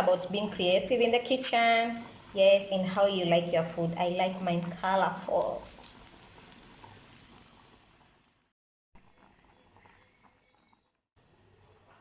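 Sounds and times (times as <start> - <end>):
faint hiss: 0.0 - 8.5
cricket chirping: 9.0 - 12.0.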